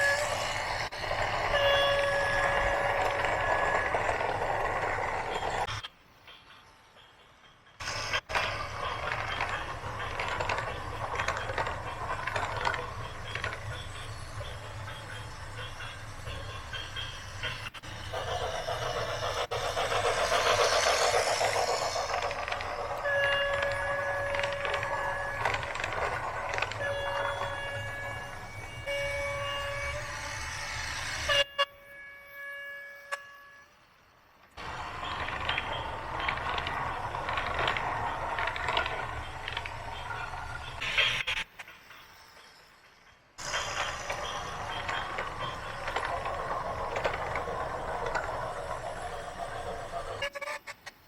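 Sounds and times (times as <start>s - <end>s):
machinery metallic clattering: 7.9s - 28.9s
machinery low hum: 7.9s - 31.4s.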